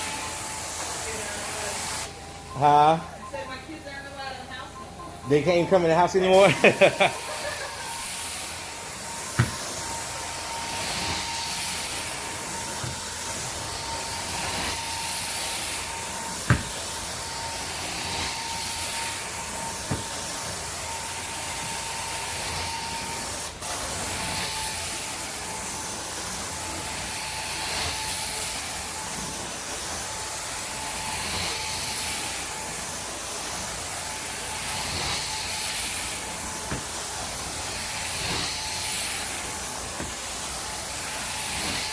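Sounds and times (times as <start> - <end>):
carpet extraction wand hissing: 5.5 - 41.9.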